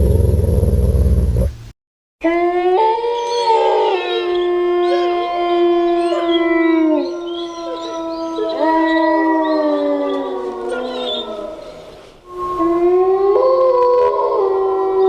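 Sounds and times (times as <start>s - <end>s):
wolves howling in chorus: 2.2s - 15.0s.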